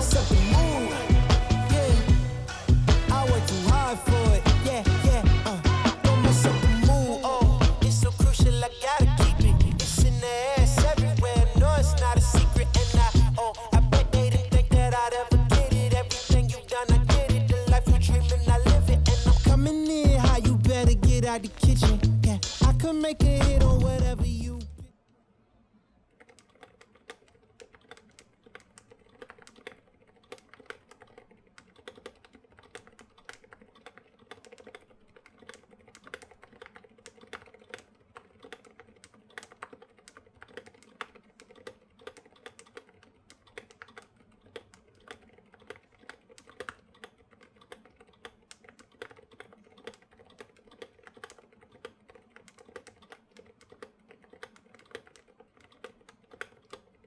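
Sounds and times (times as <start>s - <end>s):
soft keyboard typing: 26.2s - 57.0s.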